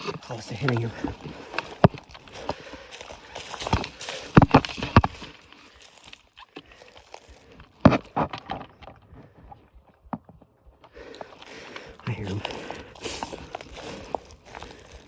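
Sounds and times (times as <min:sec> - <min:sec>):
footsteps crunching through dry leaves: 0:01.2 - 0:07.7, 0:12.1 - 0:15.0.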